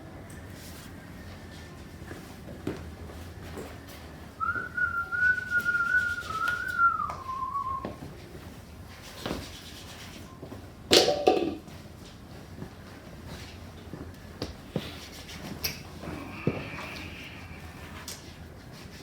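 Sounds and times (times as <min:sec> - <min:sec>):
person whistling: 0:04.4 - 0:08.0.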